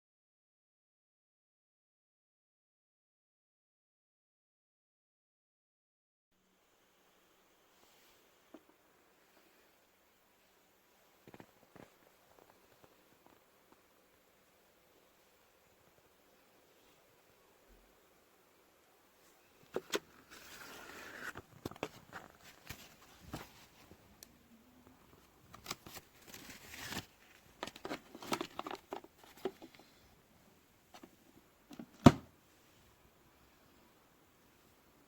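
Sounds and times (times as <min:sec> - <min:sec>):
rustling: 0:19.1 - 0:30.2
clicks and knocks of handling: 0:27.6 - 0:29.8.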